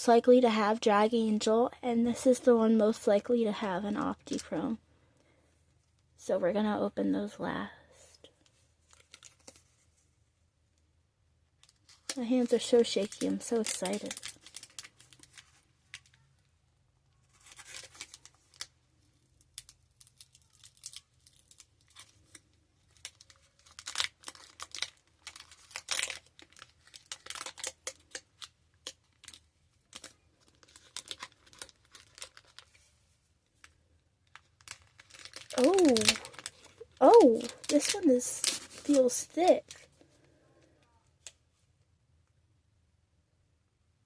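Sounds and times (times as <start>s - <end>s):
wrapper tearing and crinkling: 8.8s - 9.8s, 11.6s - 16.3s, 17.2s - 18.8s, 19.4s - 32.9s, 34.2s - 40.0s.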